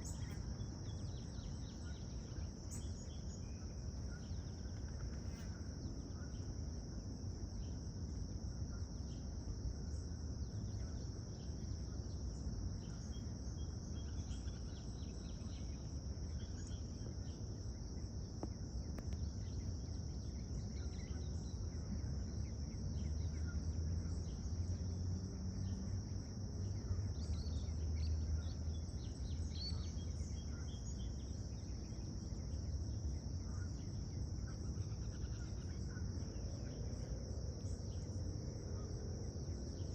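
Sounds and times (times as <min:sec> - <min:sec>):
high-pitched insect chorus: 0:00.0 - 0:39.9.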